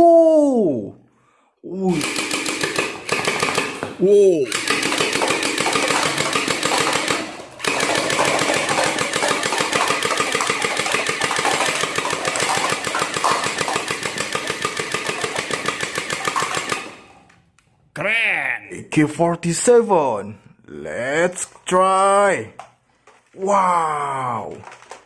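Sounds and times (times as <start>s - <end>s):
toy rifle rapid mechanical rattle: 2.0s - 3.9s, 4.5s - 17.1s.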